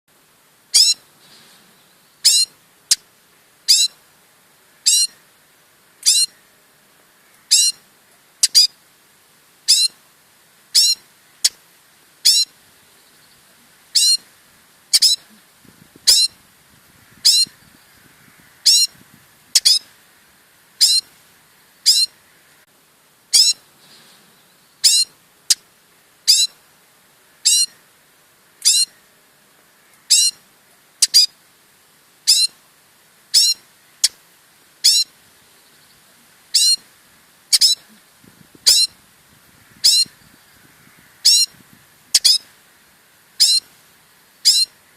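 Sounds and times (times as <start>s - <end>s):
fledgling chirping: 0.7s - 1.0s, 2.2s - 3.0s, 3.7s - 4.0s, 4.8s - 5.2s, 6.0s - 6.4s, 7.5s - 7.8s, 8.4s - 8.8s, 9.7s - 10.0s, 10.7s - 11.6s, 12.2s - 12.5s, 13.1s - 14.2s, 14.9s - 15.4s, 16.0s - 16.4s, 17.2s - 18.0s, 18.6s - 19.9s, 20.8s - 21.1s, 21.8s - 22.2s, 23.3s - 23.6s, 24.8s - 25.6s, 26.3s - 26.6s, 27.4s - 27.8s, 28.6s - 29.0s, 30.1s - 30.4s, 31.0s - 31.3s, 32.3s - 32.6s, 33.3s - 34.2s, 34.8s - 35.1s, 35.8s - 36.8s, 37.5s - 38.0s, 38.6s - 39.0s, 39.8s - 42.5s, 43.4s - 43.7s, 44.4s - 44.8s.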